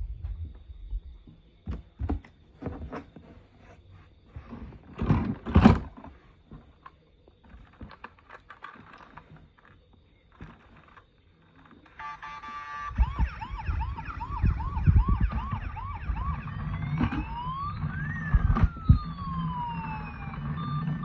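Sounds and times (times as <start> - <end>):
toys and packaging handled: 7.5 - 21.0.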